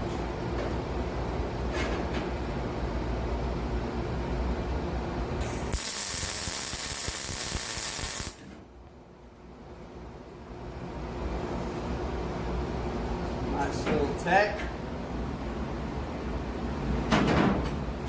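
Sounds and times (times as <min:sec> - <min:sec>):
welding arc crackling: 0:05.4 - 0:08.4.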